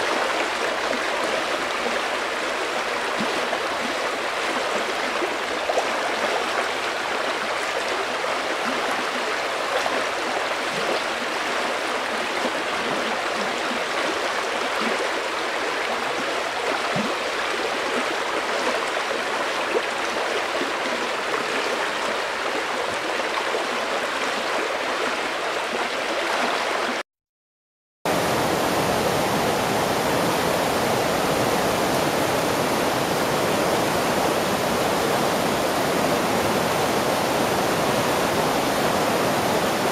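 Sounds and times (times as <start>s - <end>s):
river water flowing over rocks: 0.0s - 27.0s, 28.1s - 39.9s.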